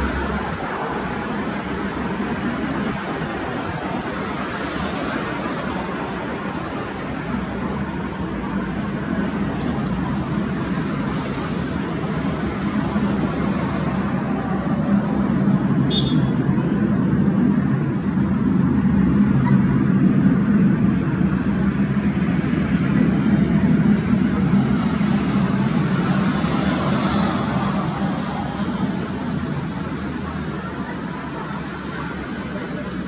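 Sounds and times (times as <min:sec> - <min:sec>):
jet engines roaring: 0:00.0 - 0:33.0
high jet whistle: 0:15.8 - 0:16.4.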